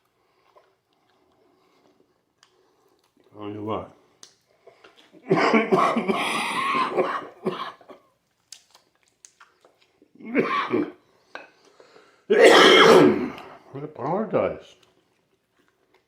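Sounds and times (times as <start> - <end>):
man clearing his throat: 5.3 - 7.9, 10.2 - 11.0, 12.3 - 13.4
man coughing: 5.3 - 7.9, 10.2 - 11.0, 12.3 - 13.4.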